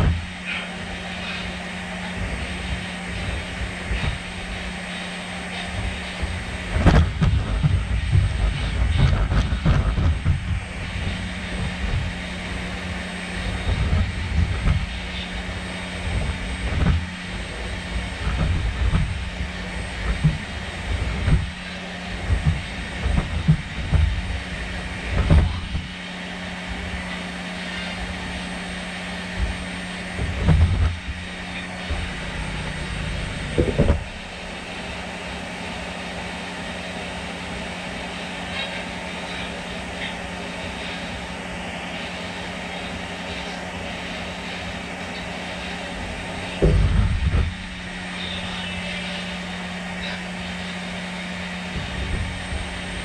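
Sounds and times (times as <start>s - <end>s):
robot motors humming: 0.0s - 53.0s
low thumps of walking robot: 6.8s - 12.1s, 16.2s - 17.1s, 20.0s - 21.6s, 22.2s - 24.4s, 25.1s - 26.0s, 30.2s - 34.4s, 46.6s - 47.8s.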